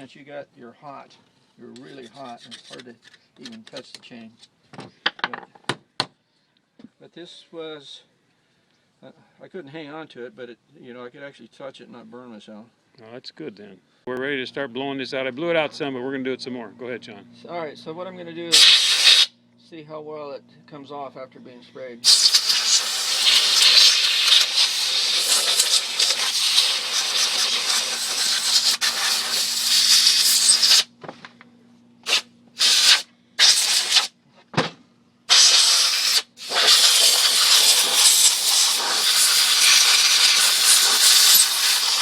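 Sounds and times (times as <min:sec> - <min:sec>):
compressed air blowgun hissing: 0:18.5 - 0:19.3, 0:22.0 - 0:30.9, 0:32.0 - 0:34.1, 0:35.3 - 0:42.0.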